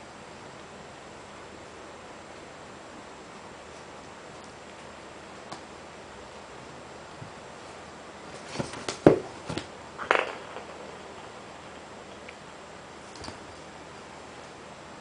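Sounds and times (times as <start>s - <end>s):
faint hiss: 0.0s - 15.0s
knocks and rustles: 8.3s - 11.9s.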